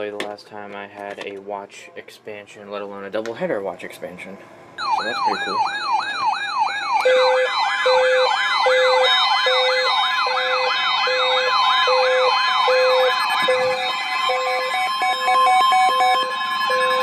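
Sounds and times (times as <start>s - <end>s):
low repeating beep: 4.8s - 7.5s
electronic siren yelping: 4.8s - 17.0s
steady high tone: 4.8s - 17.0s.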